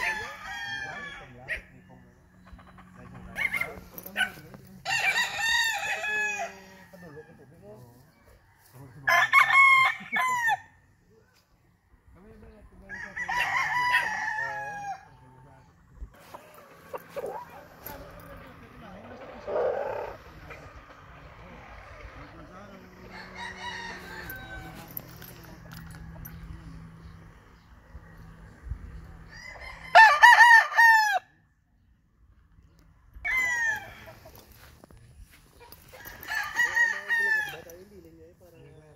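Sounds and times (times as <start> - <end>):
rooster crowing: 0.0 - 1.5, 4.8 - 7.4, 8.3 - 10.8, 12.8 - 15.3, 22.6 - 26.3, 29.0 - 31.3, 33.2 - 34.7, 35.8 - 37.9
cockerel crowing: 23.1 - 25.0, 29.3 - 31.3, 35.9 - 37.8.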